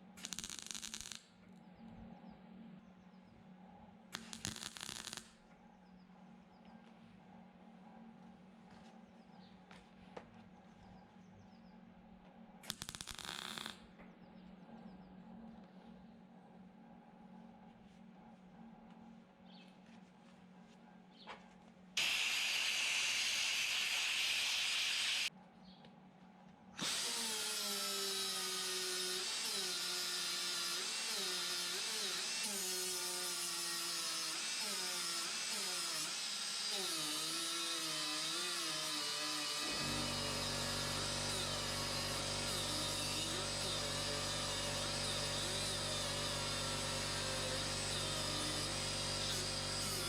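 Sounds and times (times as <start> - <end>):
handheld power tool running: 22.0 - 25.3, 26.8 - 50.0.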